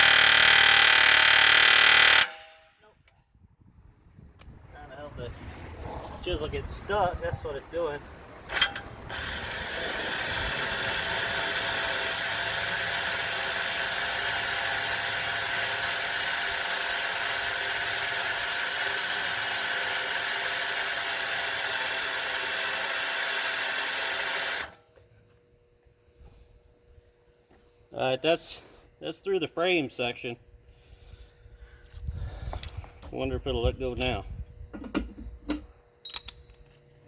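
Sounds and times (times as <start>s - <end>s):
electric drill boring into steel: 0.0s - 2.6s, 8.5s - 24.8s.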